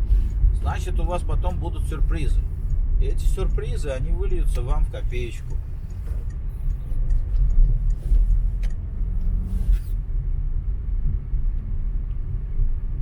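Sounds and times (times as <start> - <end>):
low vehicle rumble: 0.0 - 13.0.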